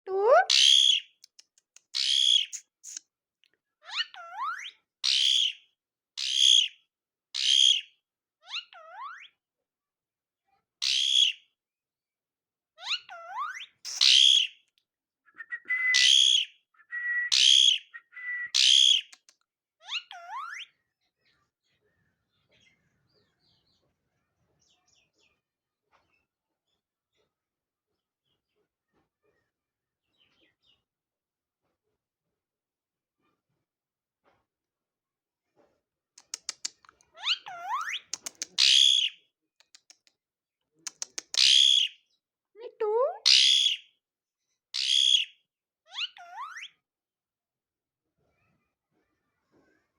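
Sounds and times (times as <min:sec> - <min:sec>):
parakeet screeching: 0:00.2 - 0:01.0, 0:02.0 - 0:03.0, 0:03.9 - 0:05.5, 0:06.2 - 0:06.6, 0:07.4 - 0:07.8, 0:12.8 - 0:14.5, 0:16.0 - 0:16.5, 0:17.3 - 0:19.1, 0:37.2 - 0:39.1, 0:41.4 - 0:41.9, 0:43.1 - 0:43.8, 0:44.8 - 0:45.3, 0:45.9 - 0:46.7
parrot harsh squawks: 0:00.2 - 0:01.0, 0:02.0 - 0:03.0, 0:03.9 - 0:05.5, 0:12.8 - 0:14.5, 0:15.8 - 0:19.0, 0:37.2 - 0:39.1, 0:41.4 - 0:41.9, 0:43.1 - 0:43.8, 0:44.8 - 0:45.3, 0:45.9 - 0:46.8
parakeet whistling: 0:13.9 - 0:14.5, 0:15.4 - 0:19.1, 0:38.6 - 0:39.1, 0:43.3 - 0:43.8, 0:44.8 - 0:45.3
parrot clicking: 0:36.2 - 0:37.0, 0:38.1 - 0:38.8, 0:39.6 - 0:40.1, 0:40.9 - 0:41.6.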